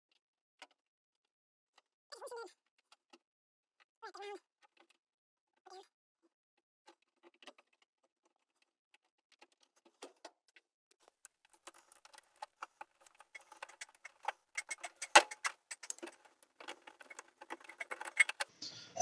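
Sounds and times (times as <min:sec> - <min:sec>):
clicks and crackles of wire splicing: 0:11.2 - 0:18.5.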